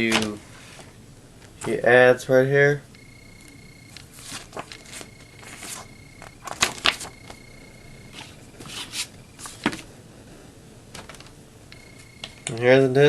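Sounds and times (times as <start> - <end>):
paper rustles: 4.0 - 7.4, 8.1 - 9.9.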